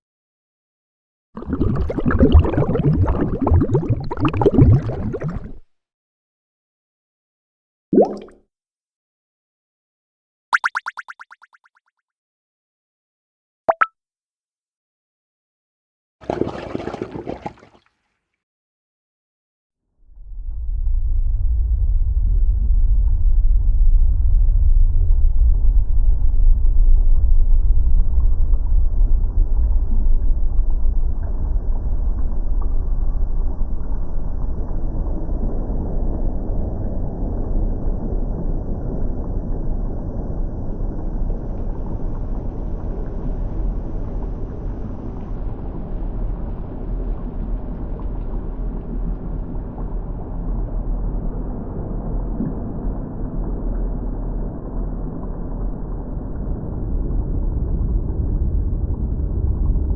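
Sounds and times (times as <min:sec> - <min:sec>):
water bubbling: 0:01.4 - 0:05.6, 0:08.0 - 0:08.4, 0:10.6 - 0:11.8.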